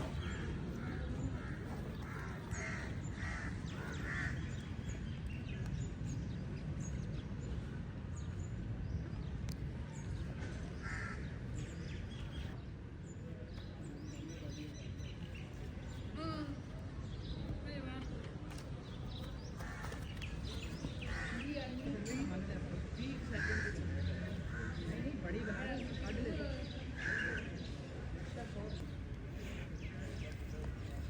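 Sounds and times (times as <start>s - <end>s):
birds calling: 0.0s - 6.2s, 10.0s - 12.6s, 18.8s - 31.0s.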